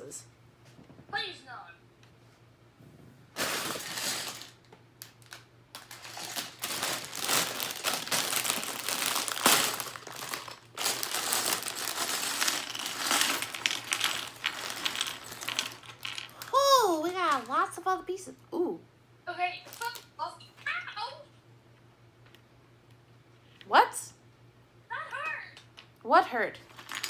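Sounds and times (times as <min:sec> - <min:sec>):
plastic bag crinkling: 0:03.4 - 0:17.7, 0:19.7 - 0:20.1.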